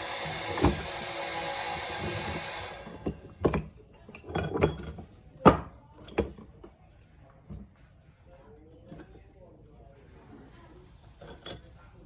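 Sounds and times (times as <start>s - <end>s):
metal parts clinking and knocking: 1.8s - 5.1s, 5.9s - 7.1s.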